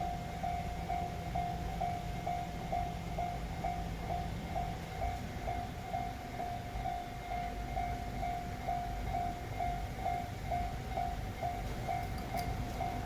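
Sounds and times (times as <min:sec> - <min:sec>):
level-crossing warning bell ringing: 0:00.0 - 0:13.0
train rumbling past: 0:00.0 - 0:13.0.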